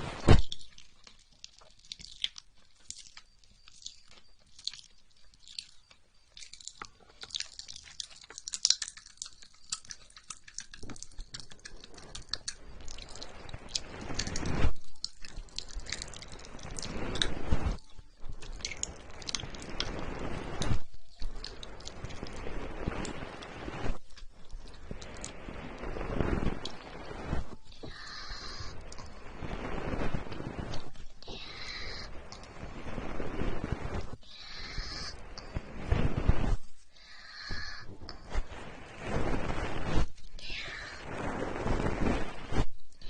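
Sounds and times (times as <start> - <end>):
wet sticky clicks and crackles: 0.4 - 20.0, 20.6 - 22.4.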